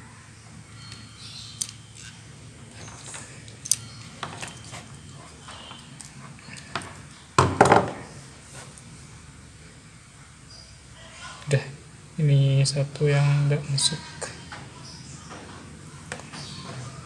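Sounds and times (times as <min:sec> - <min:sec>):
small clicks of crimping tool: 0:01.6 - 0:02.2.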